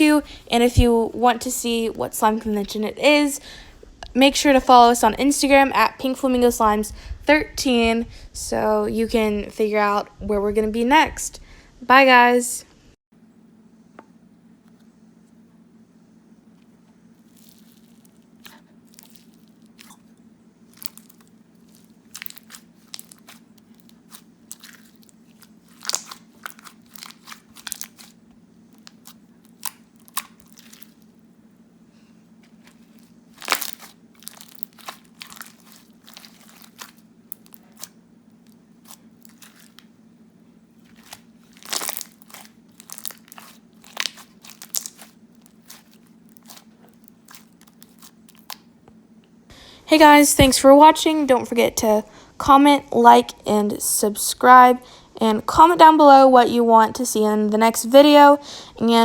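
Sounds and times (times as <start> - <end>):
slime squished by hand: 17.2 - 20.1, 20.7 - 31.1, 32.4 - 39.9, 40.8 - 48.7.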